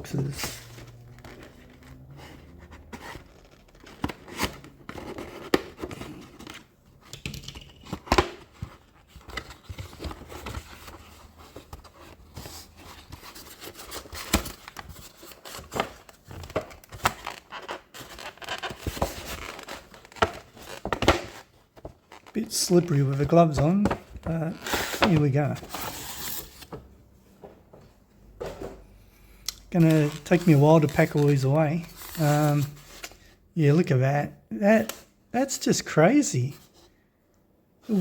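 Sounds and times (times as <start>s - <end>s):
cardboard rustling and scraping: 0.0s - 6.7s, 7.8s - 26.9s, 29.7s - 33.2s.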